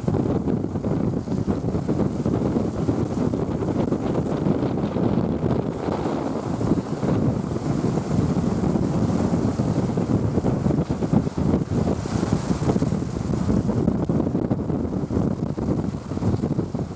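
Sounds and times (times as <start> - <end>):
sea waves washing: 0.0 - 16.9
wind buffeting microphone: 0.0 - 16.9.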